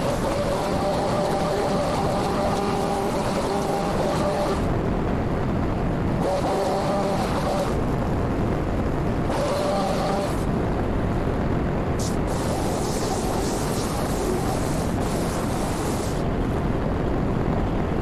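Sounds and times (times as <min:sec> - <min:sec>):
small gas engine revving: 0:00.0 - 0:04.7, 0:06.2 - 0:07.8, 0:09.3 - 0:10.5
steady rumbling noise: 0:00.0 - 0:18.0.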